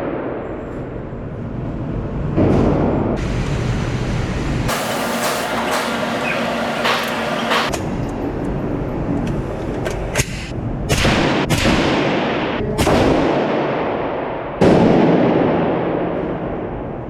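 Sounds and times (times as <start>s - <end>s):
gunshots with echoing tail: 10.9s - 17.0s.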